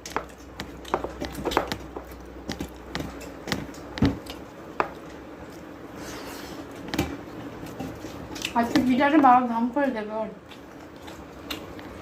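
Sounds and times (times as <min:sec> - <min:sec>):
chewing: 0:07.5 - 0:08.8, 0:10.4 - 0:12.0.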